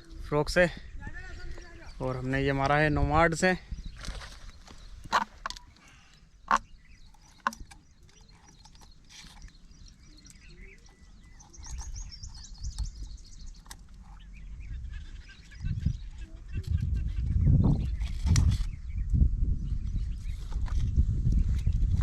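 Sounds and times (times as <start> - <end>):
high bird chirps: 3.7 - 19.1.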